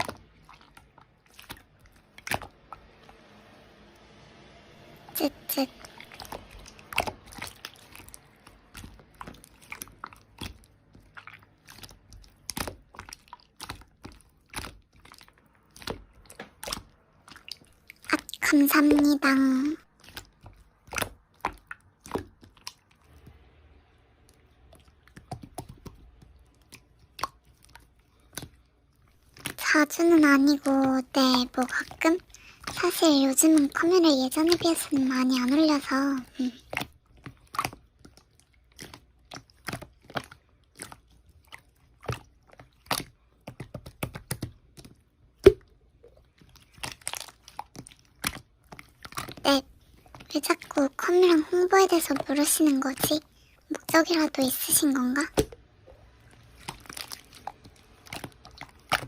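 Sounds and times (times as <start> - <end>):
slime squeezed by hand: 24.4 - 59.0.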